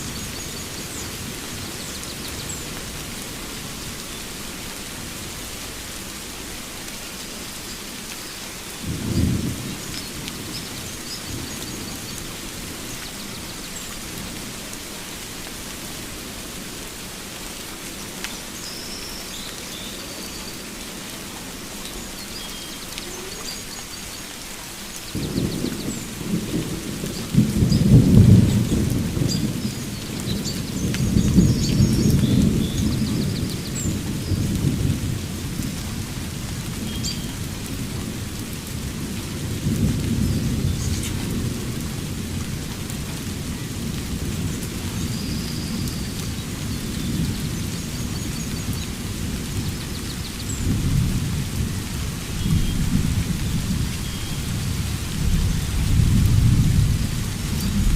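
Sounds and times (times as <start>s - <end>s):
steady rain: 0.0s - 57.9s
rolling thunder: 8.8s - 12.2s, 25.2s - 36.9s, 50.6s - 57.9s.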